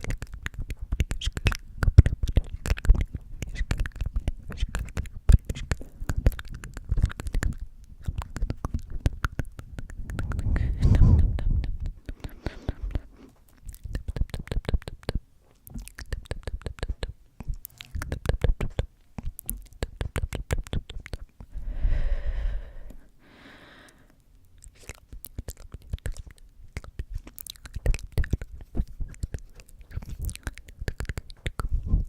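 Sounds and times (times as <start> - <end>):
mouth clicks and taps: 0.0 - 21.6, 24.0 - 32.0
breathy blow into microphone: 10.2 - 13.3, 21.5 - 24.1.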